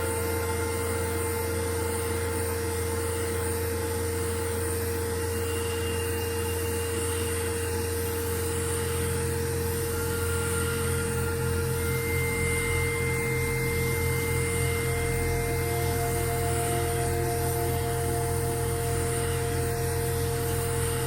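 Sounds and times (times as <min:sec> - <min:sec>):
motor whirring hum: 0:09.0 - 0:21.0.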